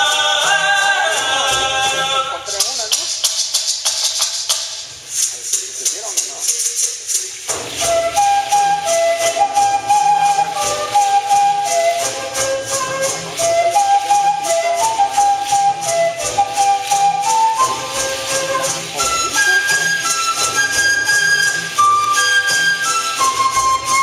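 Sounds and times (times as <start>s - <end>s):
shaken rattles: 0.0s - 24.0s
flute melody: 7.5s - 24.0s.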